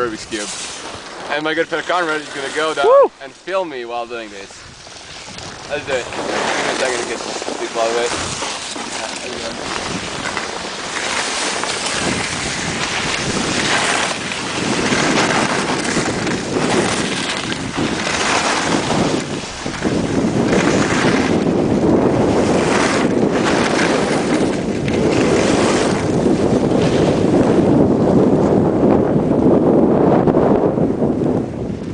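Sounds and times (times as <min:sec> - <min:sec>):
wind rushing over microphone: 0:00.0 - 0:31.9
skis hissing over snow: 0:04.2 - 0:16.0.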